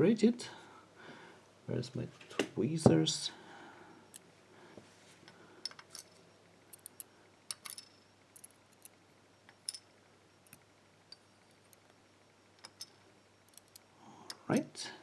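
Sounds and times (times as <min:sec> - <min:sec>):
small metallic lock part clicks: 0:06.8 - 0:09.0, 0:12.6 - 0:14.7.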